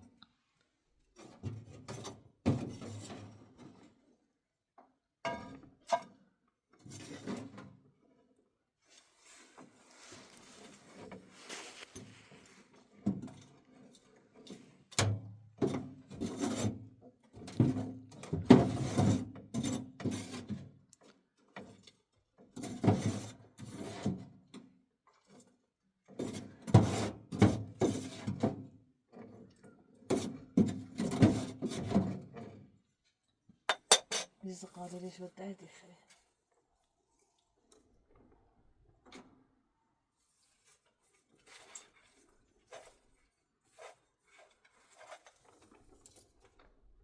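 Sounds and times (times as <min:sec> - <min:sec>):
hard objects knocking and clattering: 0:33.7 - 0:34.3.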